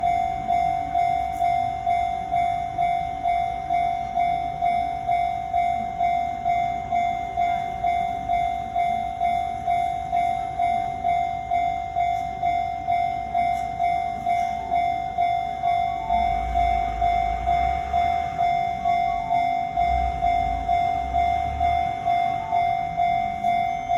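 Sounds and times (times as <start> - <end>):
low train rumble: 0.0 - 23.9
railroad crossing bell ringing: 0.0 - 23.9.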